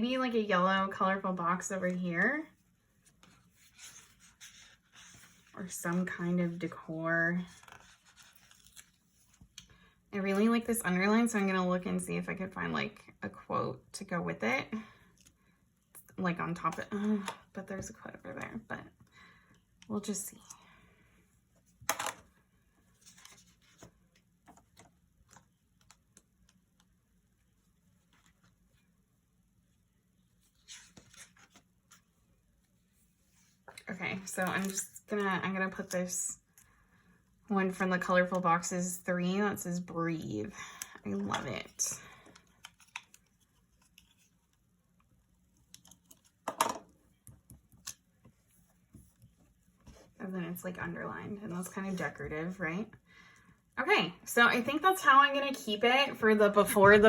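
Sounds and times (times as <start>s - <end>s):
paper rustling: 2.8s - 6.1s, 7.4s - 9.6s, 22.8s - 26.8s, 30.3s - 33.8s, 41.2s - 44.6s.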